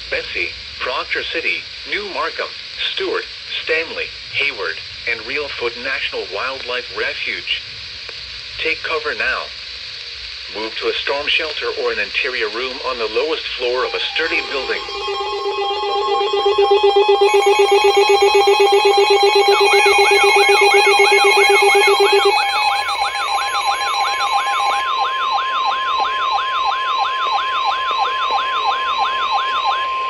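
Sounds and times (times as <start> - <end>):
steady high alert tone: 13.7 - 25.2
siren-like rising and falling sweep: 13.7 - 30.0
fast-pulsing lower tone: 13.8 - 24.8.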